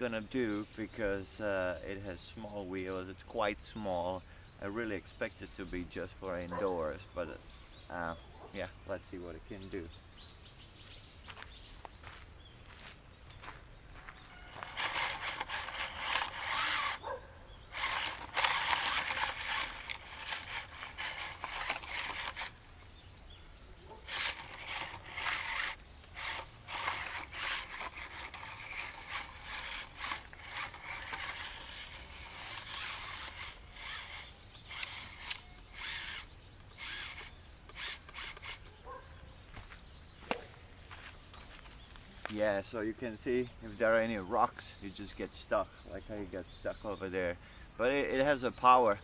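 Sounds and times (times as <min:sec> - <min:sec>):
wheels scrabbling on dirt: 0:10.6 - 0:49.0
electric motor whining: 0:14.0 - 0:23.2, 0:23.9 - 0:38.9.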